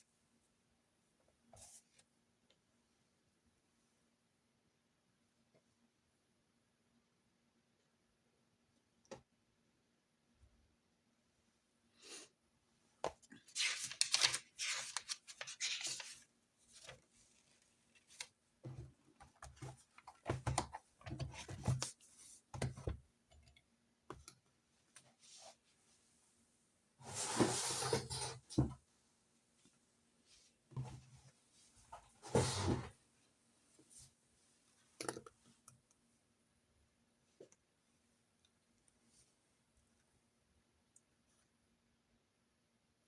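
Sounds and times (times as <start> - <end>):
paper rustling: 13.4 - 18.4.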